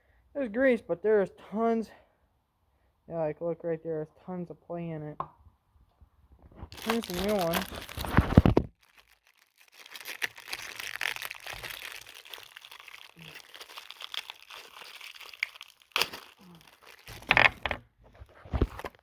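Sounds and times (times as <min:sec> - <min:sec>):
plastic packaging crinkling: 0:06.6 - 0:19.0.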